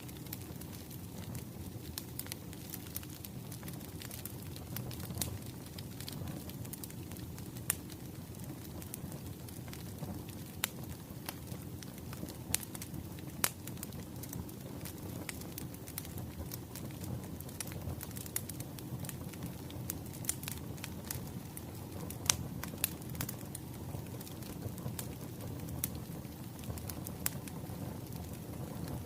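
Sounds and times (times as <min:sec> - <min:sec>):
wood fire crackling: 0:00.0 - 0:29.0.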